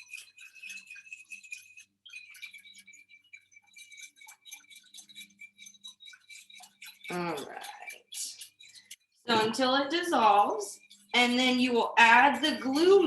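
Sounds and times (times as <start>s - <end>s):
spoon scraping small bowl: 0.0s - 13.0s.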